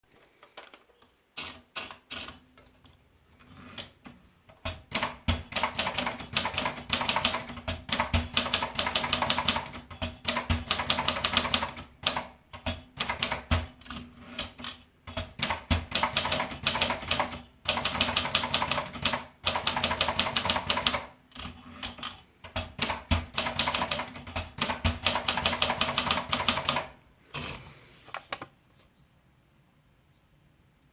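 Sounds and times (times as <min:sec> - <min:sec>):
typewriter typing: 0:01.4 - 0:02.5, 0:03.4 - 0:27.7.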